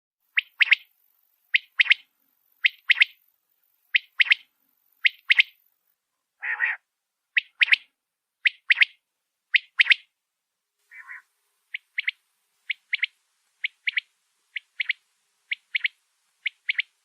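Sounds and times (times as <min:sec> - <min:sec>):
quail calling: 0:06.4 - 0:06.8, 0:10.9 - 0:16.9.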